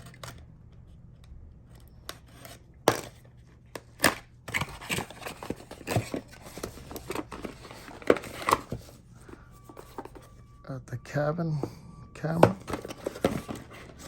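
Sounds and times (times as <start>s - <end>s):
packaging crinkling and rustling: 1.7s - 10.4s, 12.3s - 14.0s.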